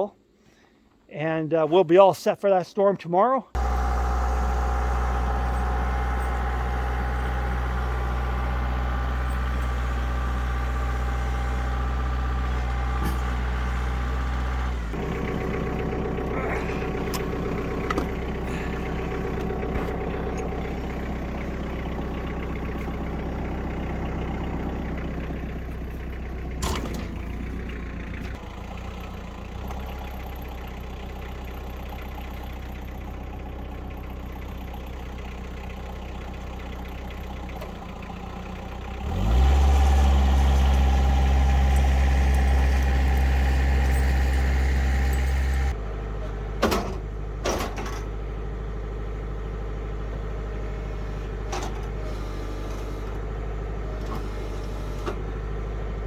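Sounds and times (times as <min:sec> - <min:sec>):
diesel tractor engine idling: 0:03.5 - 0:56.0
engine revving: 0:03.6 - 0:30.6, 0:38.3 - 0:45.8, 0:51.7 - 0:53.2, 0:54.0 - 0:55.2.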